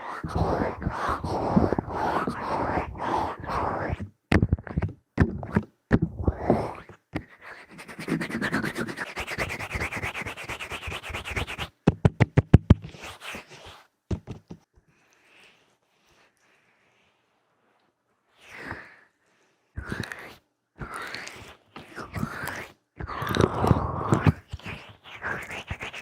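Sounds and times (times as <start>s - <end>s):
fingers rubbing microphone: 0.2s - 11.8s, 22.0s - 26.0s.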